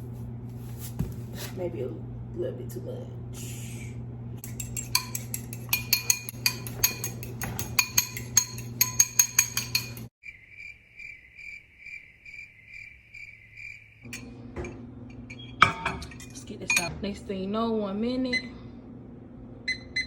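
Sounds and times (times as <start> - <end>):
low steady hum: 0.0 - 10.1
fork beating eggs in glass bowl: 4.4 - 10.1.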